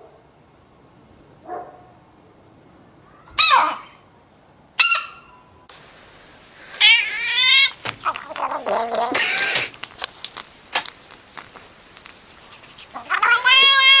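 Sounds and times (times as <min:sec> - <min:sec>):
animal cries: 0:03.0 - 0:04.0, 0:04.8 - 0:05.4, 0:06.8 - 0:09.9, 0:12.9 - 0:14.0
wavering animal call: 0:03.1 - 0:04.0.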